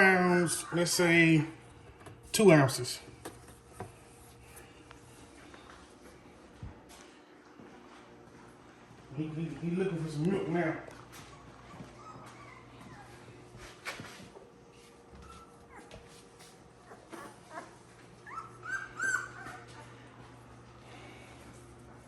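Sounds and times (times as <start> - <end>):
puppy whimpering: 0.0 - 1.4, 11.0 - 13.5, 15.1 - 16.0, 16.8 - 20.1.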